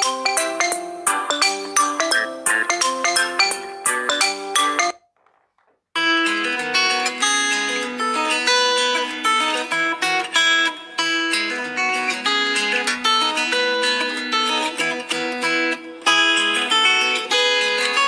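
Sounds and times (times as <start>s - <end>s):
phone ringtone: 0.0s - 5.1s
plucked acoustic guitar melody: 0.0s - 18.0s.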